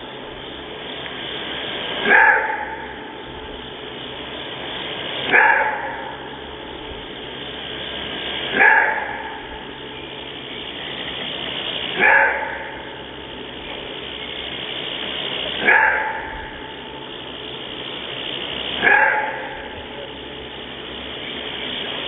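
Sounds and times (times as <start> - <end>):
wolf gruff barks: 2.0 - 3.1, 5.2 - 6.4, 8.4 - 9.6, 11.9 - 13.0, 15.6 - 16.8, 18.7 - 20.3.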